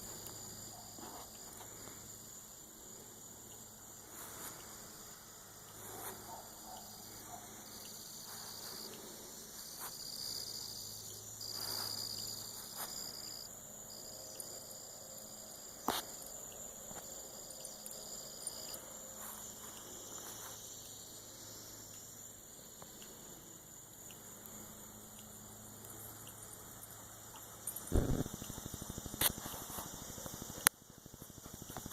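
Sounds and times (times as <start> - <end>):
insects trilling: 0.0 - 31.9.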